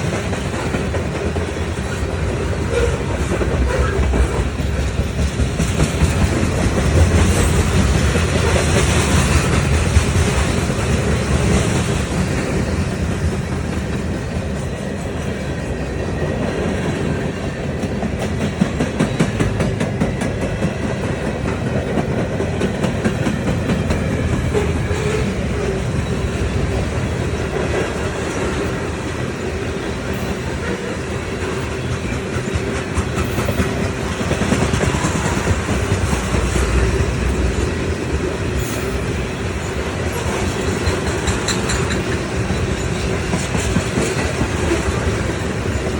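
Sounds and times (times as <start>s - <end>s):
train rumbling past: 0.0s - 45.9s
wheels clicking over rail joints: 40.0s - 45.9s.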